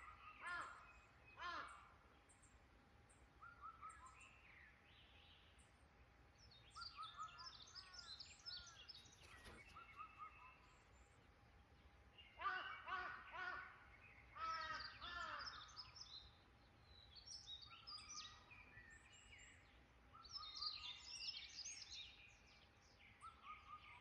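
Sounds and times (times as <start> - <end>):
soft bird chirps: 6.4 - 12.1.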